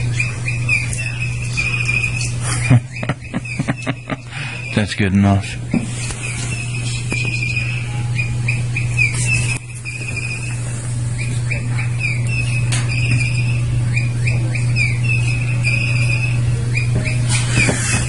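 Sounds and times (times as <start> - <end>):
low hum: 0.0 - 18.0
toy bird chirping: 6.2 - 10.6, 11.2 - 17.9.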